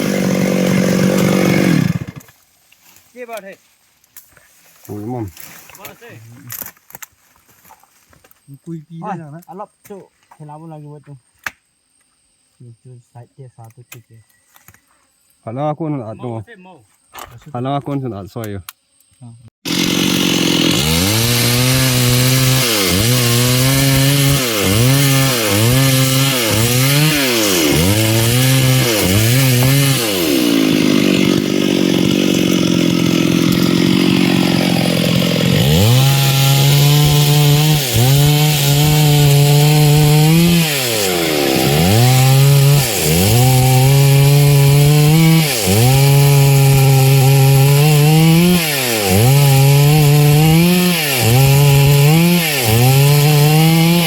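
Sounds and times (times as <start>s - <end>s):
chainsaw cutting a log: 0.0s - 2.3s, 19.6s - 54.0s.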